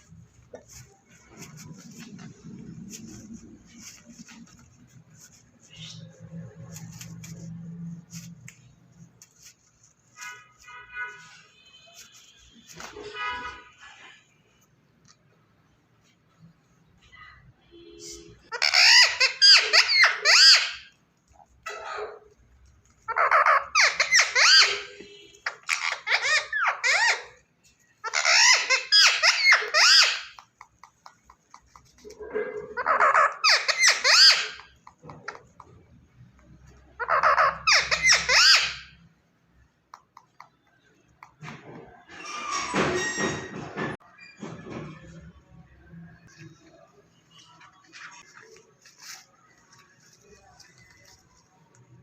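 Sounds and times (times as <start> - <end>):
parakeet squawking: 5.2 - 6.2, 18.5 - 20.9, 23.1 - 27.4, 28.0 - 30.5, 31.1 - 35.6, 36.7 - 39.0
parrot beak and claws clicking: 29.4 - 32.2, 39.9 - 41.5.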